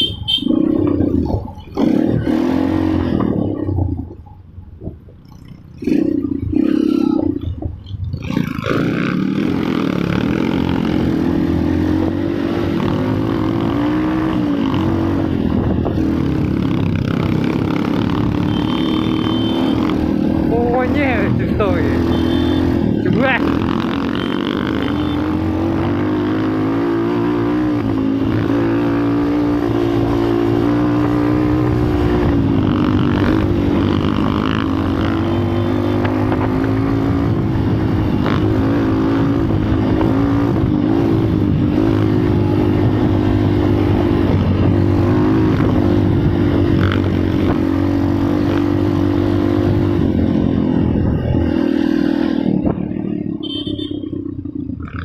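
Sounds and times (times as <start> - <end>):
vehicle horn sounding: 0.0 - 0.8, 18.4 - 20.0, 22.0 - 22.8, 24.1 - 25.3, 35.1 - 36.2, 53.4 - 54.2.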